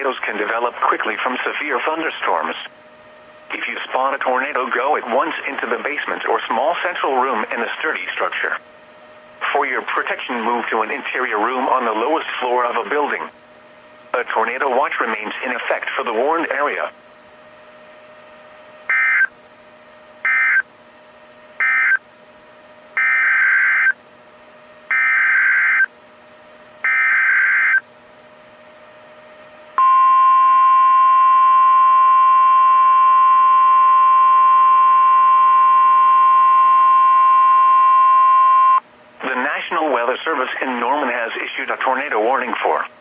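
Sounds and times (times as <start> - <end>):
steady warning alarm tone: 18.8 - 19.4, 20.2 - 20.7, 21.6 - 22.1, 22.9 - 24.0, 24.9 - 25.9, 26.8 - 27.9, 29.8 - 38.8.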